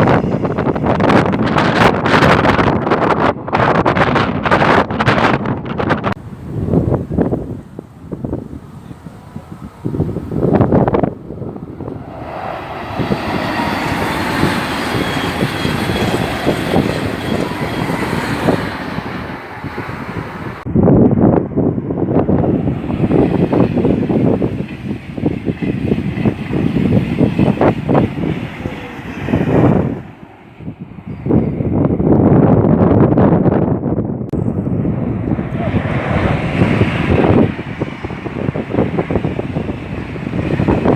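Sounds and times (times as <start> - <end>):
train wheels rumbling on rail: 0.0 - 20.7, 21.8 - 40.9
wind buffeting microphone: 0.0 - 40.9.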